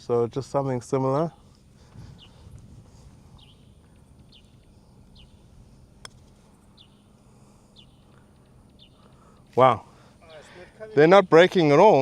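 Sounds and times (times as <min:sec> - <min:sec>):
bird chirping: 0:01.4 - 0:10.6
putter striking golf ball: 0:03.6 - 0:07.1.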